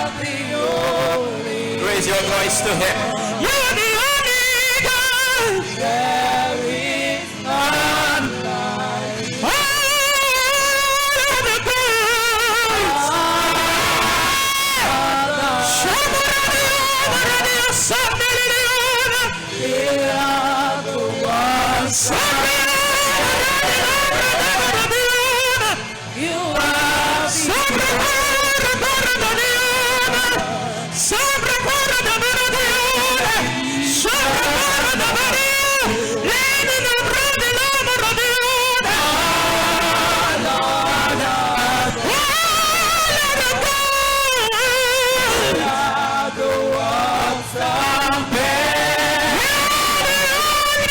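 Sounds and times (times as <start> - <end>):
person singing gospel song: 0.0 - 50.9.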